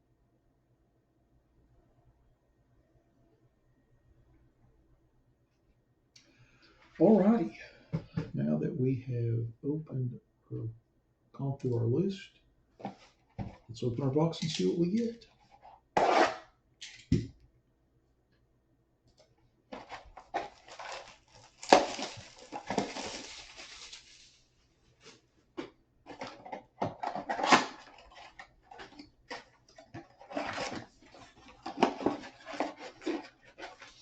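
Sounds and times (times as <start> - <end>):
packs rustling and knocking: 19.7 - 24.4, 25.0 - 34.0
cardboard and plastic tearing: 19.8 - 25.2, 26.1 - 34.0.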